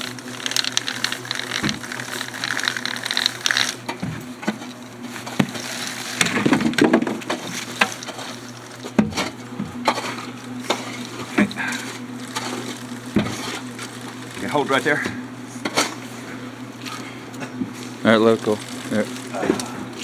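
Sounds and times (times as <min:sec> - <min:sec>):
steady low hum: 0:00.0 - 0:20.0
clay chunks knocking and thudding: 0:05.3 - 0:09.8.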